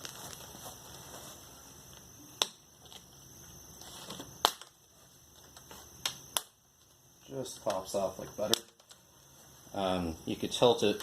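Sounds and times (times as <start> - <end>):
plastic rustling: 0.0 - 2.0.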